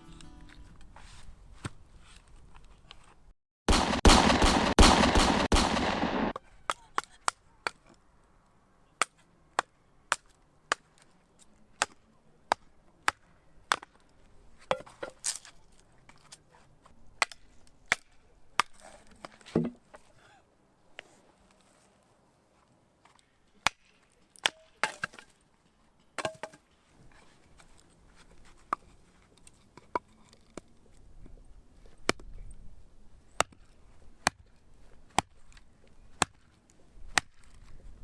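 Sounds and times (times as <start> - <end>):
heavy strikes: 3.7 - 6.3.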